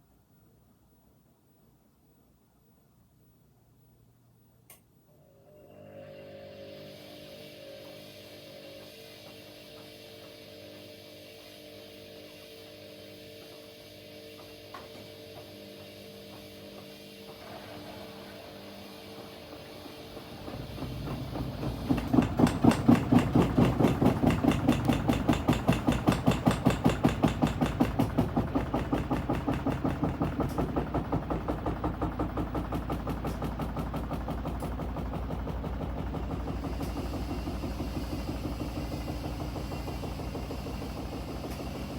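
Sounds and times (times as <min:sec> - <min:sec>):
washing machine drum thumping: 0:19.3 - 0:41.9.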